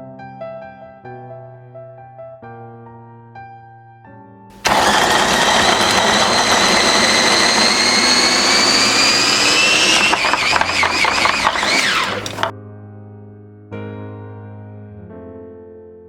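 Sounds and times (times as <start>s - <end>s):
blender motor whining: 4.6s - 12.5s.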